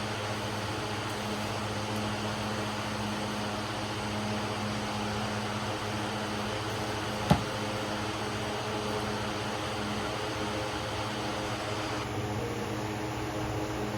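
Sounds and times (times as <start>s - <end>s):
sharp knock: 7.2s - 7.6s.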